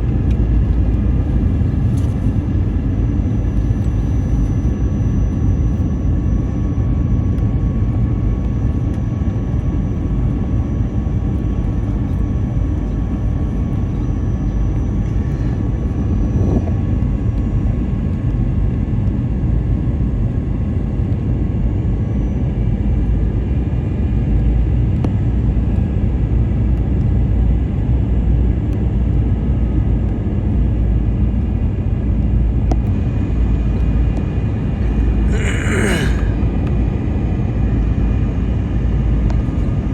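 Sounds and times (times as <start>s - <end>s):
faint high whine: 0.0s - 18.4s
aircraft cabin engine rumble: 0.0s - 39.9s.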